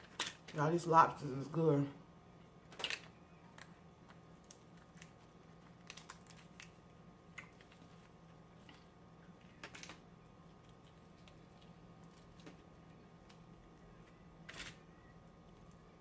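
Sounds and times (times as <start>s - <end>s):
low steady hum: 0.0s - 16.0s
crunchy eating: 3.5s - 16.0s.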